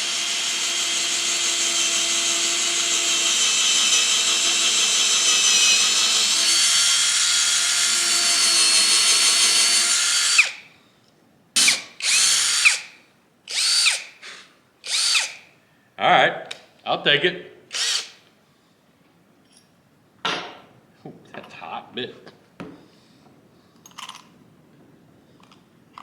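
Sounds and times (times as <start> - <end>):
cordless drill whining: 0.0 - 10.6, 11.6 - 12.9, 13.5 - 15.4, 17.7 - 18.2.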